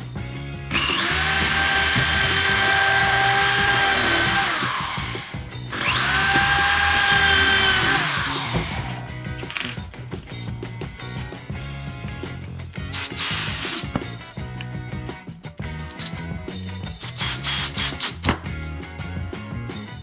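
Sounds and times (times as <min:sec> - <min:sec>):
power tool high-pitched whine: 0:00.7 - 0:09.0.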